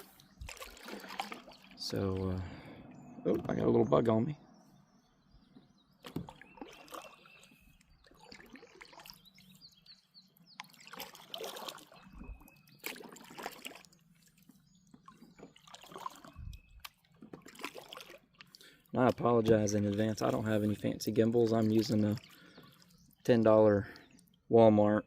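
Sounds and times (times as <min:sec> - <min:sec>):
kayak paddle swishing through water: 0:00.0 - 0:02.2, 0:06.0 - 0:23.2
water trickling off paddle: 0:00.0 - 0:03.4, 0:05.5 - 0:24.5.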